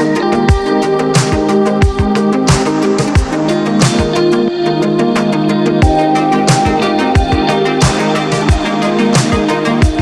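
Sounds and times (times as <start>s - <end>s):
electronic music: 0.0s - 10.0s.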